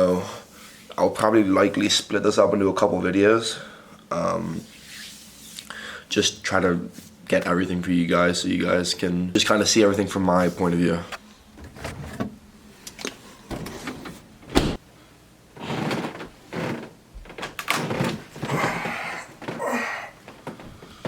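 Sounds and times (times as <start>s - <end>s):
knocks and clunks: 13.5s - 14.8s, 15.6s - 21.0s
rustling: 15.6s - 21.0s.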